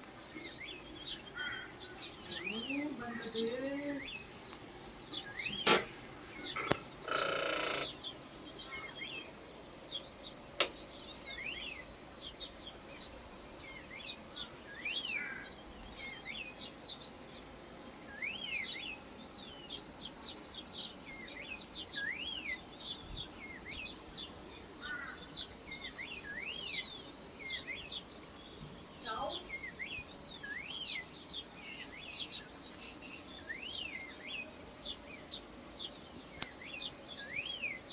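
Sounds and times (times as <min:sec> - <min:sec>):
rustle: 0:00.0 - 0:37.9
songbirds chirping: 0:00.0 - 0:37.9
sharp click: 0:05.5 - 0:05.9, 0:10.6 - 0:10.8.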